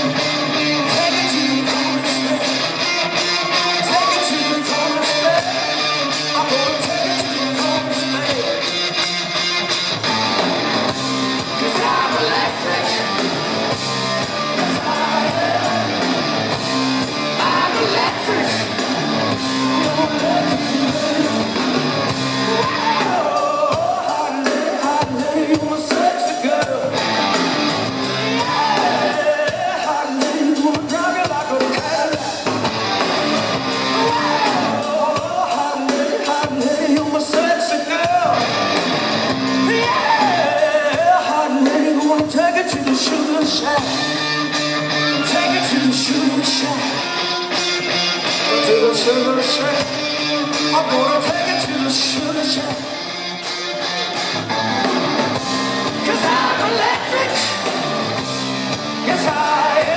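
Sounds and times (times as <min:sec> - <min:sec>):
electric guitar: 0:00.0 - 0:59.9
rock band playing live: 0:00.0 - 0:59.9
person singing: 0:11.4 - 0:13.3, 0:14.6 - 0:16.1, 0:17.3 - 0:18.8, 0:19.6 - 0:21.8, 0:22.4 - 0:27.1, 0:28.1 - 0:32.5, 0:33.8 - 0:38.4, 0:39.6 - 0:47.2, 0:48.4 - 0:53.0, 0:55.9 - 0:57.8, 0:59.0 - 0:59.9.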